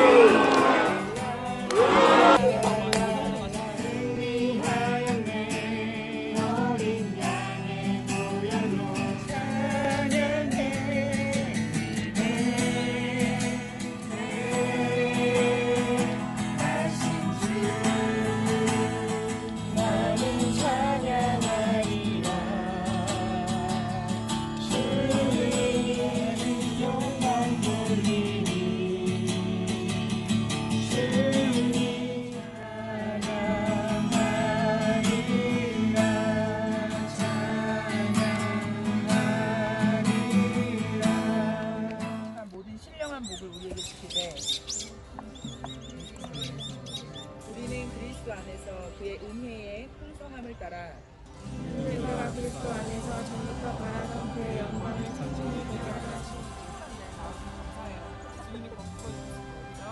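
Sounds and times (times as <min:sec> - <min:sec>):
instrumental accompaniment: 0:00.0 - 0:03.3
several voices singing worship song: 0:00.0 - 0:30.1, 0:30.8 - 0:42.2, 0:51.5 - 0:56.6.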